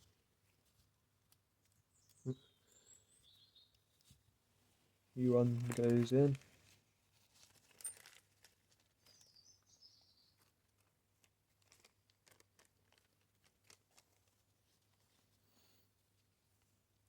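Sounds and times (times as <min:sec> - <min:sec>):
faint clicks of small metal parts: 0:05.4 - 0:06.5, 0:07.4 - 0:09.4, 0:10.4 - 0:14.4.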